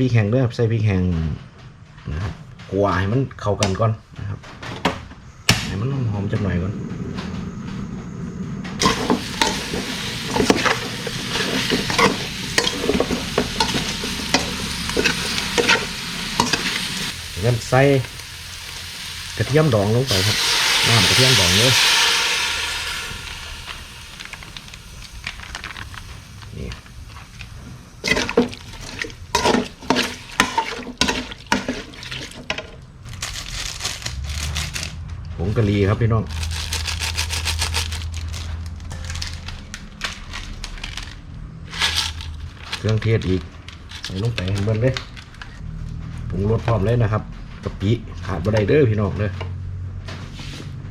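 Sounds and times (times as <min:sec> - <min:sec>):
spatula scraping a pan: 0:08.8 - 0:18.2, 0:28.0 - 0:32.8
meat sizzling in a pan: 0:08.8 - 0:32.4.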